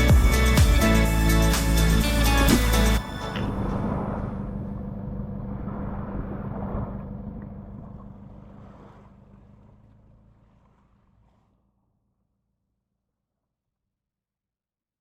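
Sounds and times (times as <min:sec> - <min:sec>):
jet ski engine running: 0:00.0 - 0:12.1
water noise: 0:02.0 - 0:11.8.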